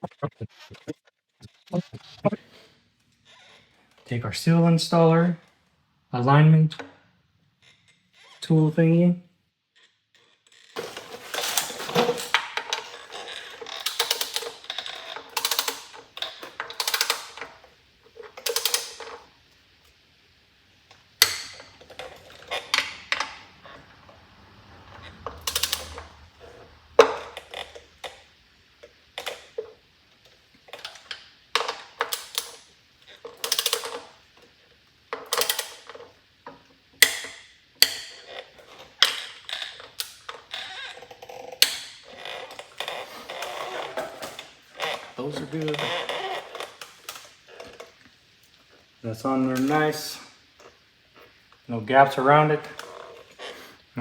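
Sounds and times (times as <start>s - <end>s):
ratchet wrench clicking: 13.7s - 17.5s, 18.4s - 19.2s, 25.2s - 26.2s, 33.4s - 34.1s, 35.3s - 35.9s.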